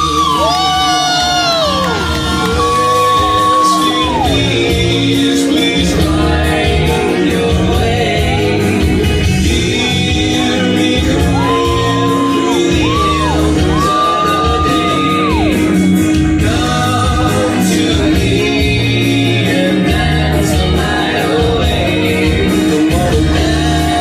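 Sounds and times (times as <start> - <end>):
people shouting: 0.0 - 4.7, 11.0 - 15.8
loud song with sung vocals: 0.0 - 24.0
steady beat and bass: 0.0 - 24.0.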